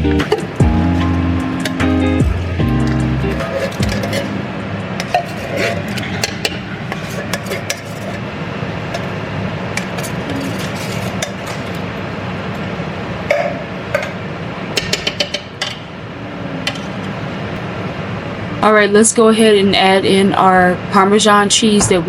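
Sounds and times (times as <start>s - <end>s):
utensils and cookware clinking: 0.0s - 8.2s, 9.7s - 11.8s, 14.8s - 15.9s
steady background hum: 0.0s - 22.0s.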